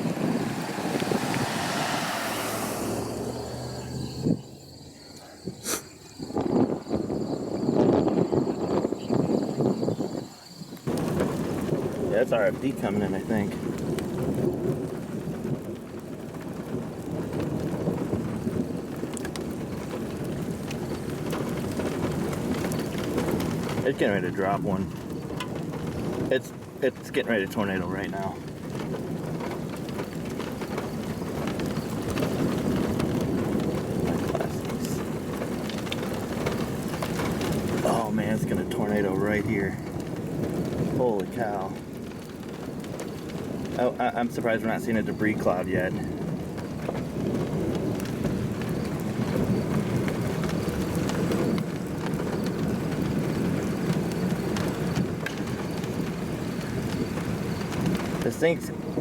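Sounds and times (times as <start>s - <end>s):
low rumble: 0.0s - 7.7s
rain: 0.0s - 59.0s
storm wind: 0.0s - 59.0s.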